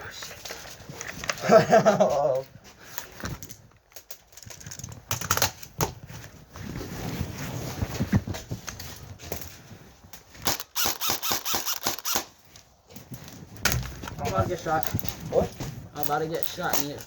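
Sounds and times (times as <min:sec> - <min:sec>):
rustling and scuffing movement: 0:00.3 - 0:03.7, 0:05.9 - 0:10.4, 0:12.3 - 0:17.0
sharp clicks or snaps: 0:10.4 - 0:12.3.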